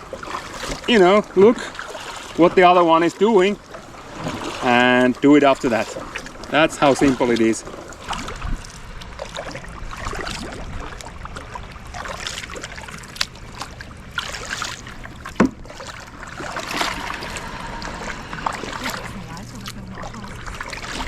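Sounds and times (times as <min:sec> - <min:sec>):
kayak paddles splashing in water: 0:00.0 - 0:21.0.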